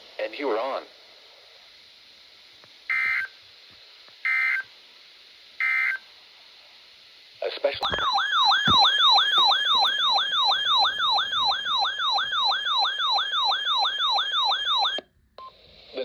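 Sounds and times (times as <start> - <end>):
electronic siren yelp: 7.8 - 15.0.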